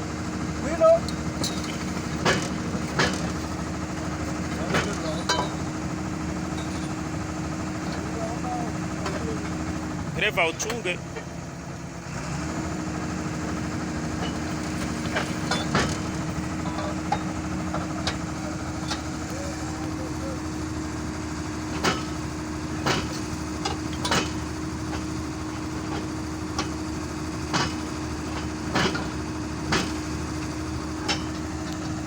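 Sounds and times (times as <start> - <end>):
excavator diesel engine idling: 0.0 - 32.0
sharp knocks on track chain: 1.4 - 3.5, 14.2 - 18.2, 21.7 - 22.2, 22.8 - 25.1, 27.5 - 30.1.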